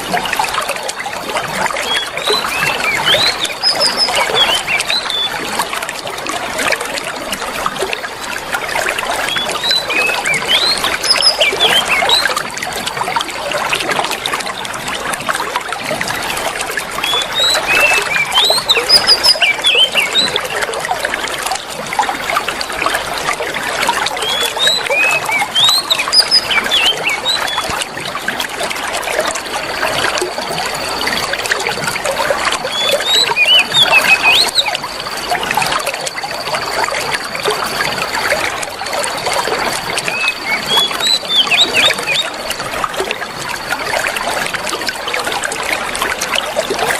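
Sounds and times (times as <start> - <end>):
songbird chirps: 0.0 - 6.1, 8.8 - 14.8, 16.9 - 21.6, 23.1 - 28.2, 28.8 - 43.1
water trickling: 0.0 - 46.9
thin steady high tone: 17.0 - 46.9.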